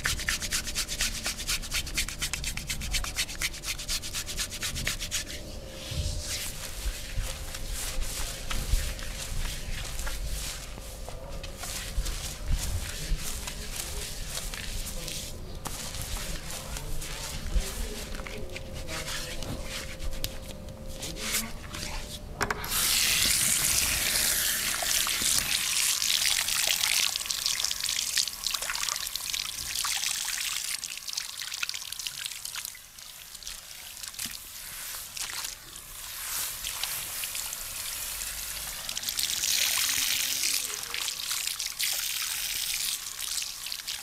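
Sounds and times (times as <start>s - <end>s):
soft handling noises: 1.1s - 24.0s
running water: 22.8s - 44.0s.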